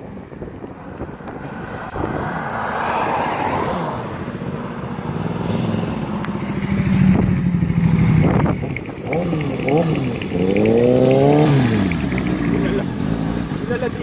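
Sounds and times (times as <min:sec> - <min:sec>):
motorcycle engine running: 0:04.6 - 0:14.0.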